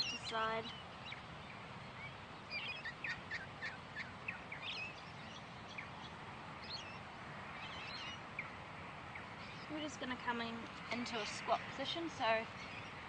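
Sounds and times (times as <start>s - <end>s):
birds chirping: 0.0s - 13.0s
steady background hiss: 0.0s - 13.0s.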